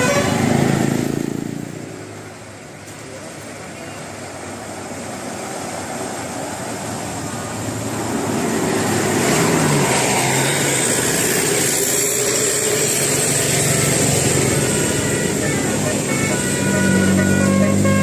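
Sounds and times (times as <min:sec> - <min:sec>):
bus engine and road noise: 0:00.0 - 0:18.0.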